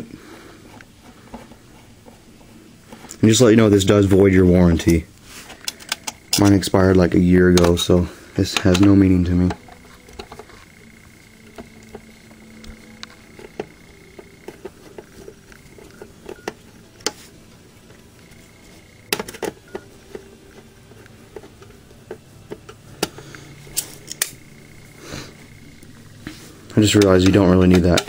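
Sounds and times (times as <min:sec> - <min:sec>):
small parts being handled: 0:00.6 - 0:28.0.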